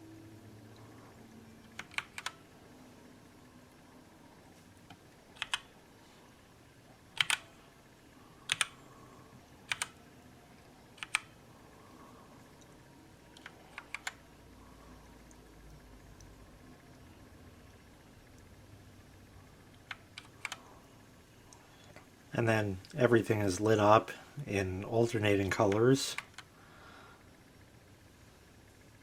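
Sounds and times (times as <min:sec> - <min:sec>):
mechanical keyboard keystrokes: 0:01.6 - 0:02.4, 0:05.4 - 0:05.7, 0:07.1 - 0:07.5, 0:08.5 - 0:08.8, 0:09.7 - 0:10.0, 0:11.0 - 0:11.4, 0:13.4 - 0:14.2, 0:19.8 - 0:20.6.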